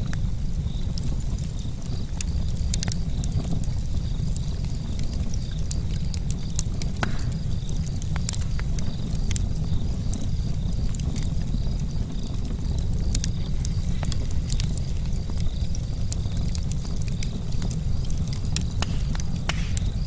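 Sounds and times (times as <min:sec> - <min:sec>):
campfire crackling and popping: 0:00.0 - 0:20.0
steady low rumble: 0:12.7 - 0:20.0.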